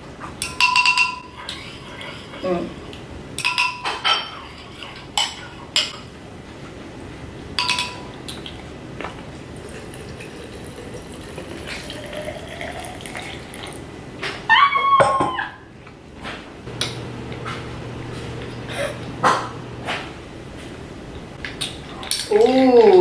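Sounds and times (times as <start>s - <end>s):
juice pouring into glass: 10.2s - 13.8s.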